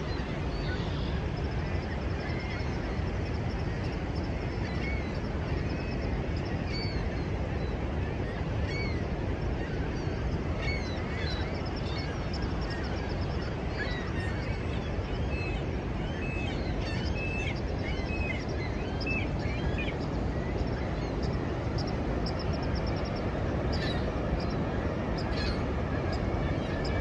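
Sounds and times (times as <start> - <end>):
birds chirping: 15.6 - 27.0.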